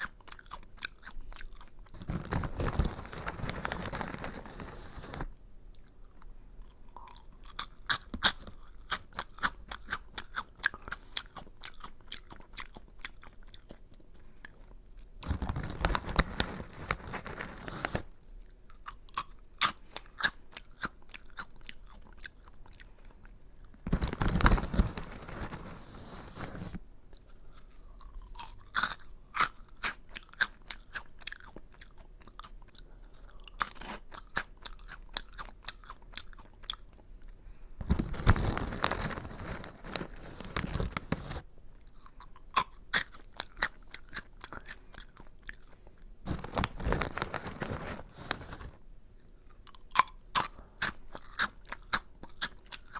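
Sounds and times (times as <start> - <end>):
crunching and chewing snack: 0.0 - 52.9.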